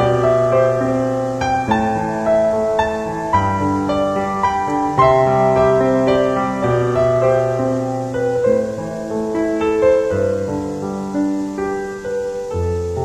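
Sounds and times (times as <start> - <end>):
piano music: 0.0 - 13.0.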